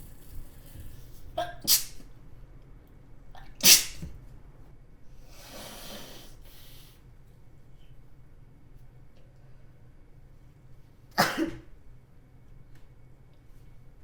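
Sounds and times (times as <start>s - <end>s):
woman sneezing: 3.6s - 4.1s.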